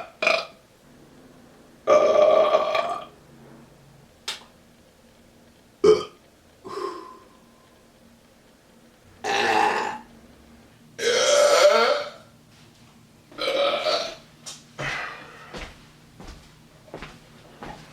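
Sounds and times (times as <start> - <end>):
man burping: 0.0 - 0.6, 1.9 - 3.1, 5.8 - 7.2, 9.2 - 10.0, 11.0 - 12.3, 13.4 - 14.2.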